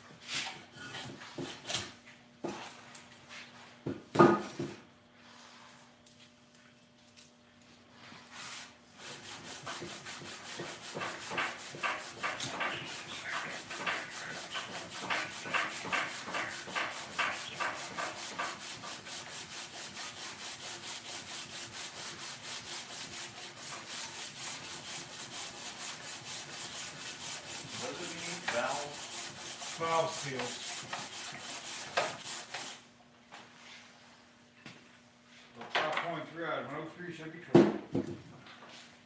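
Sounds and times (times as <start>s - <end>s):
abrasive scrubbing metal surface: 10.2s - 19.0s, 25.6s - 32.3s.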